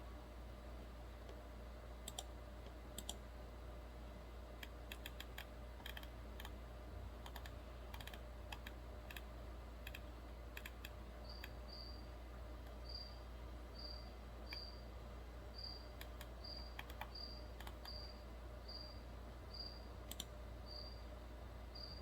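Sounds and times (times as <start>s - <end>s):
computer keyboard clicking: 2.0s - 2.3s, 3.0s - 3.2s, 4.6s - 6.6s, 7.2s - 9.2s, 9.8s - 11.6s, 16.0s - 18.0s, 20.1s - 20.3s
cricket chirping: 11.2s - 12.1s, 12.8s - 14.9s, 15.5s - 21.1s, 21.7s - 22.0s.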